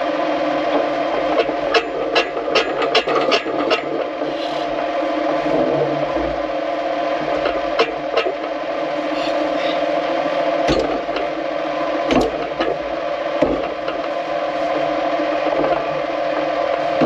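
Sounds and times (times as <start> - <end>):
tractor engine running: 0.0 - 17.0
machinery knocks and rattles: 0.7 - 4.4, 7.2 - 11.4, 12.1 - 17.0.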